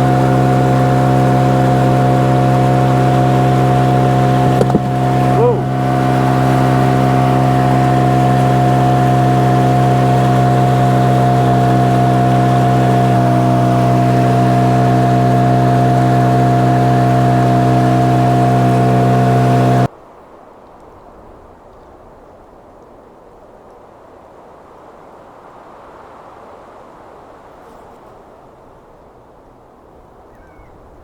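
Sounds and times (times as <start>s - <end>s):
outboard motor running: 0.0s - 19.9s.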